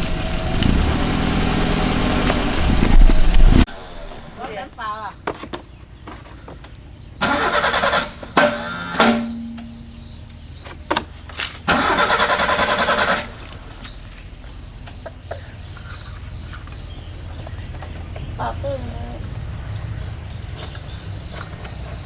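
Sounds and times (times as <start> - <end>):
mechanical noise bursts: 7.2 - 10.0, 11.7 - 13.8.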